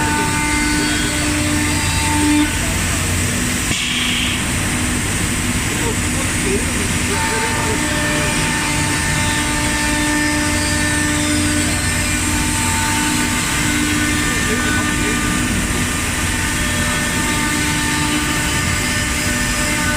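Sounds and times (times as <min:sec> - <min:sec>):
wood cutting noise: 0:00.0 - 0:03.6, 0:05.8 - 0:19.9
milling machine whining: 0:00.0 - 0:19.9.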